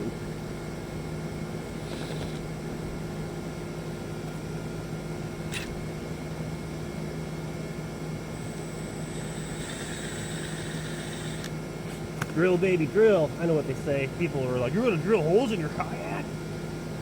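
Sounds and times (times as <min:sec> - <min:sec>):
low mechanical hum: 0:00.0 - 0:17.0
faint high whine: 0:08.2 - 0:11.5.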